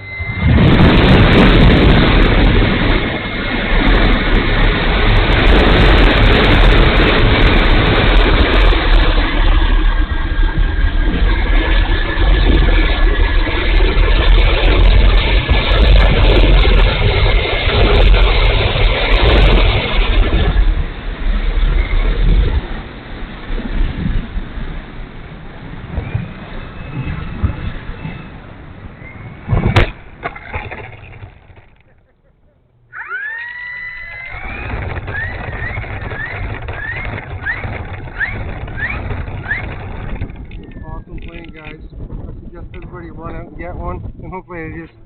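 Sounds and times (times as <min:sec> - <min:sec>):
wind buffeting microphone: 0:00.0 - 0:33.0, 0:34.0 - 0:45.0
electric motor whining in surges: 0:32.8 - 0:40.9.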